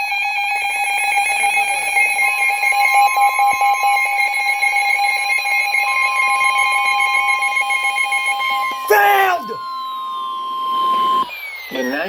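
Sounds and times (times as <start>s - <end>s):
electronic alarm tones: 0.0s - 12.0s
warbling tones: 6.1s - 12.0s.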